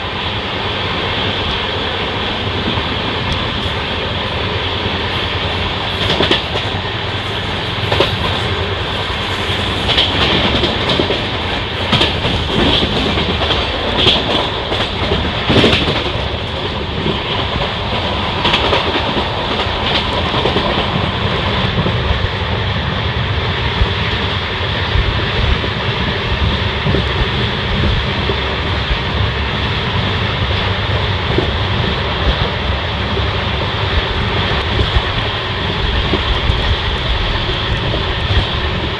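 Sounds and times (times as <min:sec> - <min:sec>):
train running rumble: 0:00.0 - 0:38.9
train wheels clicking over rail joints: 0:01.2 - 0:22.2, 0:29.9 - 0:38.9.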